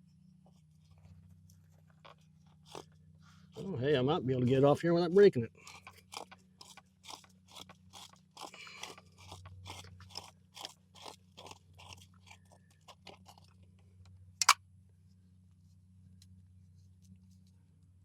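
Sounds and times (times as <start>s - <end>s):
pliers scraping plastic pipe fitting: 5.6s - 13.5s.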